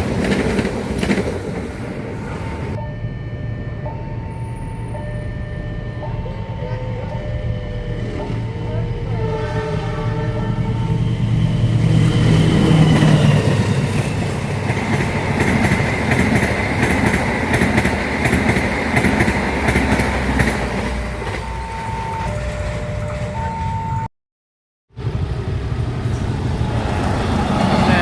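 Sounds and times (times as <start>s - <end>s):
train rumbling past: 0.0s - 24.0s, 24.9s - 28.0s.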